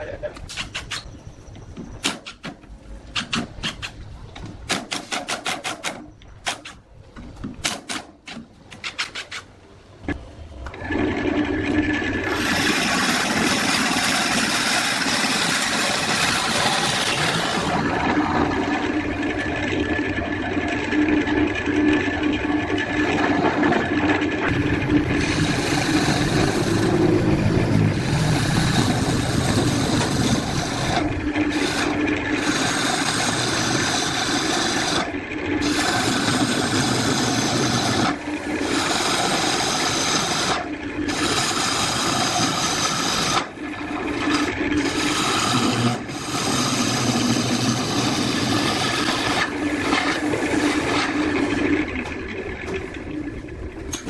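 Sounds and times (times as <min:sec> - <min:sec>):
tool scraping wood on lathe: 0:24.4 - 0:27.0, 0:27.9 - 0:43.5, 0:44.1 - 0:51.5.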